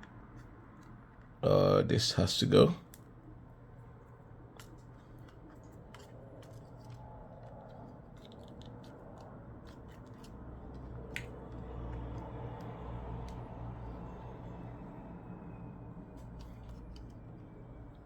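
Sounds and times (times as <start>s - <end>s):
low hum: 3.2s - 18.0s.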